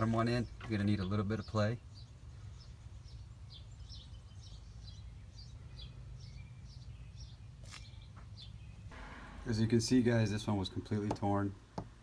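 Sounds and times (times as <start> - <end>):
small bird chirping: 0.4 - 9.0.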